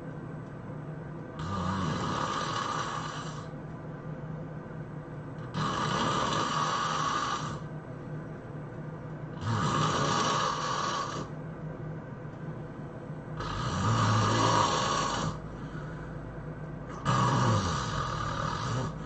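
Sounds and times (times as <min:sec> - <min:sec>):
person snoring loudly: 0:01.4 - 0:03.5, 0:05.4 - 0:07.7, 0:09.3 - 0:11.3, 0:13.4 - 0:16.0, 0:16.9 - 0:19.0
quiet breathing: 0:01.4 - 0:03.6, 0:05.4 - 0:07.8, 0:09.4 - 0:11.4, 0:12.3 - 0:19.0.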